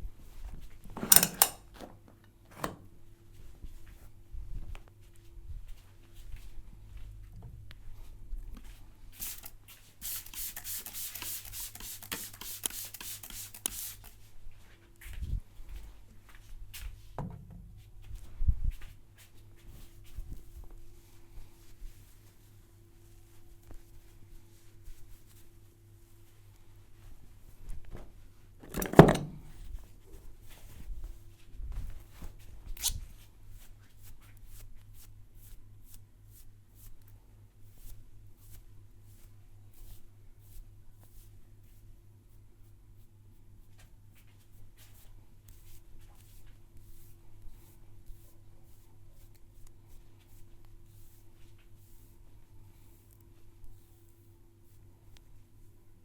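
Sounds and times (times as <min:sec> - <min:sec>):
hands rubbing hair and skin: 0:08.6 - 0:15.2, 0:44.2 - 0:54.8
hands rubbing skin: 0:09.2 - 0:14.3.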